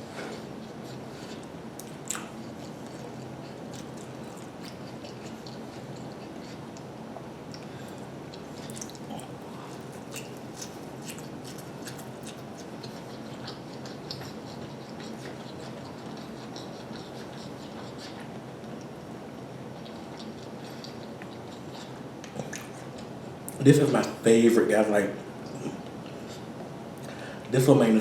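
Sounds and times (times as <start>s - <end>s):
person chewing noodles: 0.2s - 23.6s
steady low hiss: 22.0s - 28.0s.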